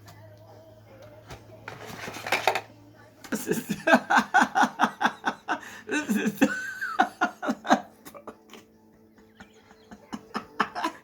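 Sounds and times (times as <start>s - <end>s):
person laughing: 3.4s - 11.0s.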